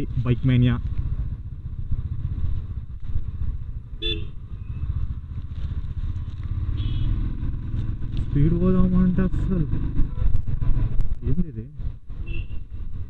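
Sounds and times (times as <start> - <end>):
motorcycle engine: 0.0 - 13.0
traffic noise: 0.0 - 13.0
vehicle horn toot: 4.0 - 4.3, 6.8 - 7.2, 12.2 - 12.6.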